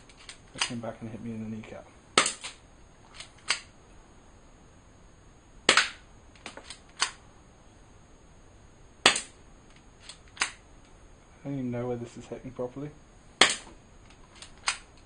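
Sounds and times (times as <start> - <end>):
bb gun firing crack: 2.2 - 3.7, 5.7 - 7.2, 9.0 - 9.4, 10.0 - 10.6, 13.4 - 13.8.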